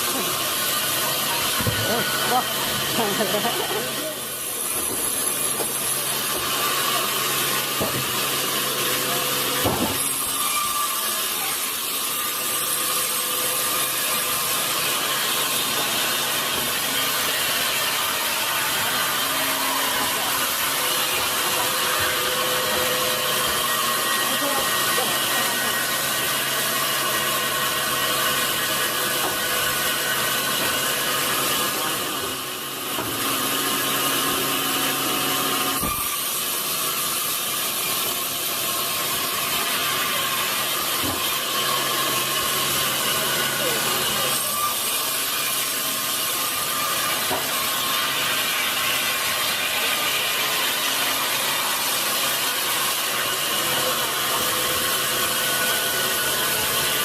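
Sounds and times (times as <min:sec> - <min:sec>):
saw blade cutting log: 0:00.0 - 0:57.0.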